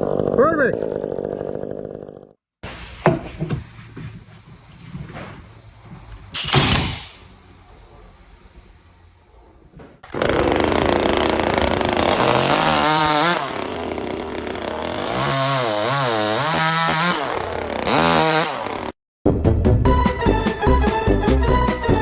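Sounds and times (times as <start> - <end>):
power tool running: 10.0 - 18.9.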